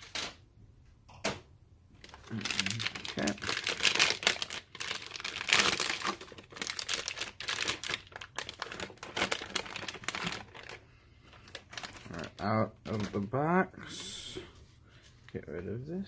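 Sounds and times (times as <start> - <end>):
plastic packaging crinkling: 2.0 - 13.5.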